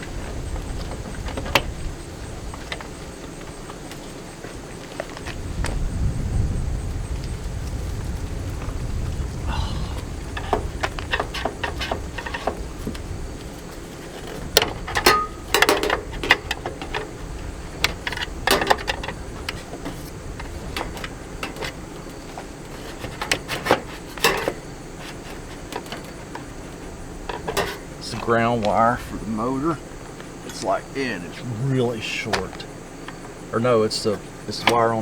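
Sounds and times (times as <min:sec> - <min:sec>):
loud metal clanks: 0:10.3 - 0:13.0, 0:14.2 - 0:17.2, 0:17.8 - 0:26.6, 0:27.2 - 0:28.2.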